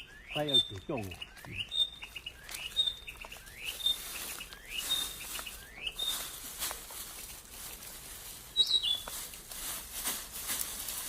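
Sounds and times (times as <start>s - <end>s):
bird call whistle: 0.0s - 6.3s, 8.6s - 9.1s
rustling: 0.4s - 11.0s.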